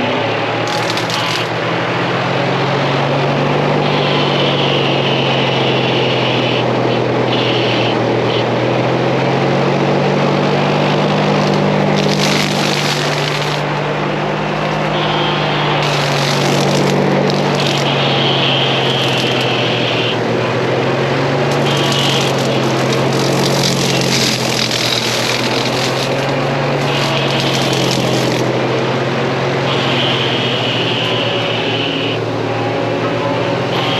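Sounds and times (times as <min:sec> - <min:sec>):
diesel engine running: 0:00.0 - 0:33.9
mower attachment cutting: 0:00.6 - 0:01.6, 0:10.7 - 0:13.8, 0:15.6 - 0:28.9
high whine: 0:10.3 - 0:32.8.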